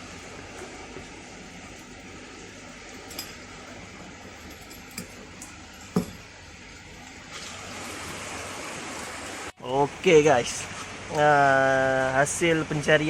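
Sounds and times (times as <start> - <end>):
hard objects clinking: 3.0 - 3.5, 4.3 - 6.3.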